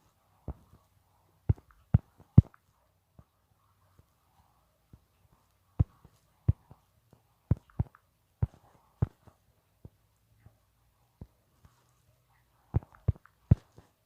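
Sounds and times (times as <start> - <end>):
taps on a touchscreen: 7.5 - 10.0, 12.7 - 13.9.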